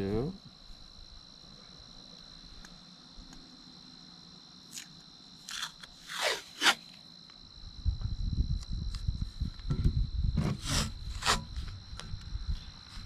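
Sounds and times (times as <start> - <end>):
crickets chirring: 0.0 - 13.0
tape ripping off roll: 4.7 - 7.0.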